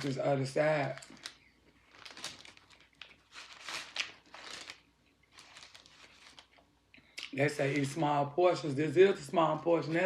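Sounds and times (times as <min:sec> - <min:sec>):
paper wrapper crinkling: 0:00.0 - 0:06.8.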